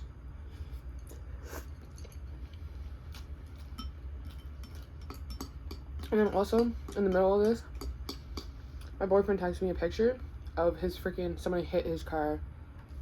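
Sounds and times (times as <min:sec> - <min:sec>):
steady low hum: 0:00.0 - 0:13.0
utensils clinking against dish: 0:03.6 - 0:08.5.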